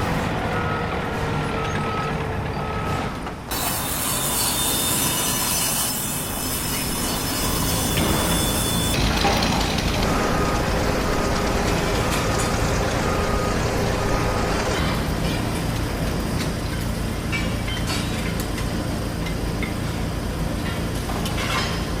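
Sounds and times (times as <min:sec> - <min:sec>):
heavy machinery engine running: 0:00.0 - 0:03.6, 0:07.6 - 0:17.2.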